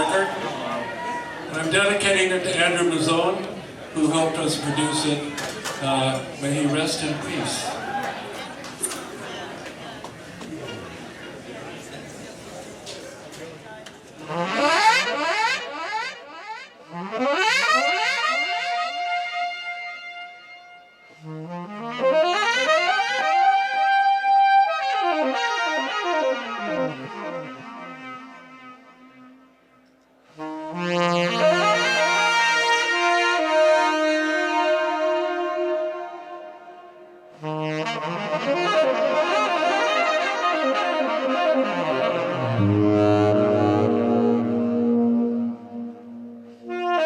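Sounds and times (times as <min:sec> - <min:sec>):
saxophone: 0:14.2 - 0:47.0.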